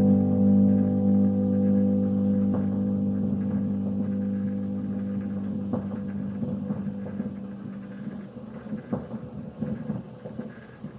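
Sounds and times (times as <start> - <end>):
electric guitar chord with echo: 0.0 - 7.9.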